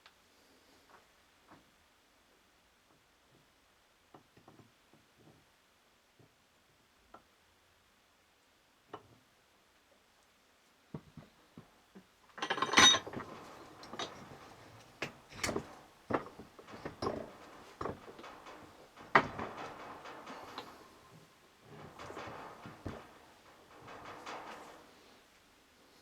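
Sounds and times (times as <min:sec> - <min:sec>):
steel parts clinking and scraping: 0:12.4 - 0:25.4.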